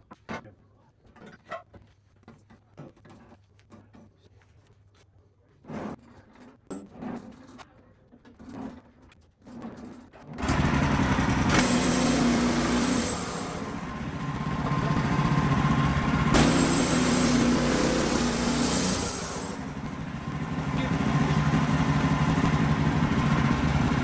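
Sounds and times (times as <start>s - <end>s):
small engine running: 10.4s - 24.0s.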